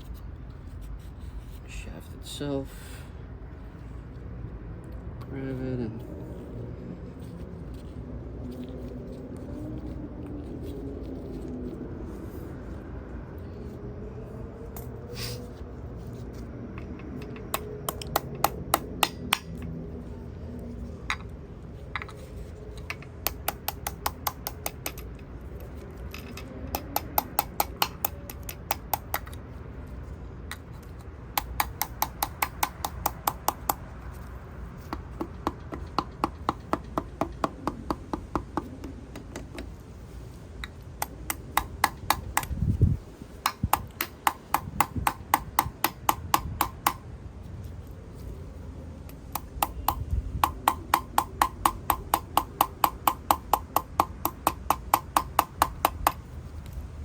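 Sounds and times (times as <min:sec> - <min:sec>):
rapid sharp tapping on metal: 0:17.2 - 0:19.7, 0:23.0 - 0:25.1, 0:26.7 - 0:29.4, 0:31.3 - 0:39.8, 0:40.6 - 0:42.6, 0:43.4 - 0:47.0, 0:49.1 - 0:56.3.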